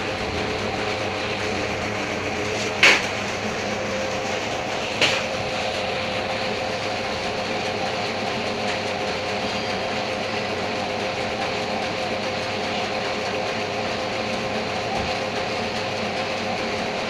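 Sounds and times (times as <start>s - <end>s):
steady machine noise: 0.0s - 17.0s
sharp knock: 2.6s - 3.1s.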